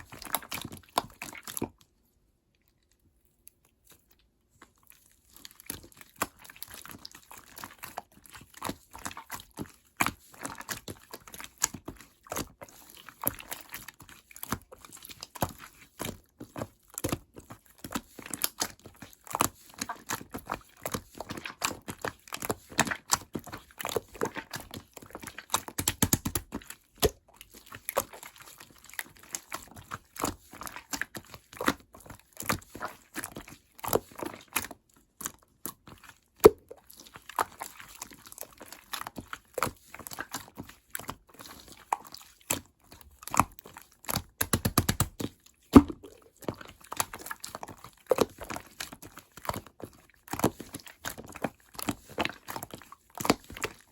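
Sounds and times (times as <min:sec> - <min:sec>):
slime squeezing sticky pops: 0:25.6 - 0:27.3, 0:43.3 - 0:47.2.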